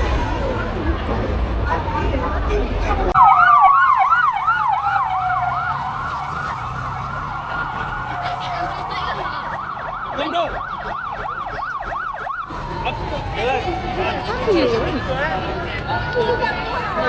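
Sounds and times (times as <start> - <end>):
police siren fast yelp: 3.2 - 15.3
police siren slow wail: 3.2 - 17.0.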